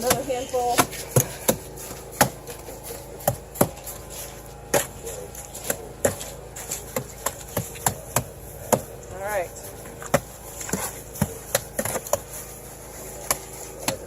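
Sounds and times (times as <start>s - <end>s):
tool knocking on wheelbarrow: 0.0s - 4.1s.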